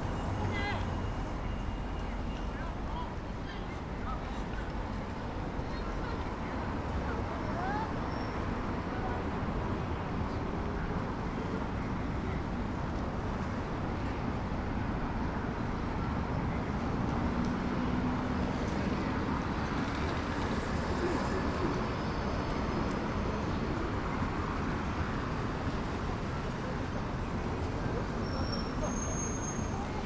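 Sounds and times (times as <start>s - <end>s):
traffic noise: 0.0s - 30.0s.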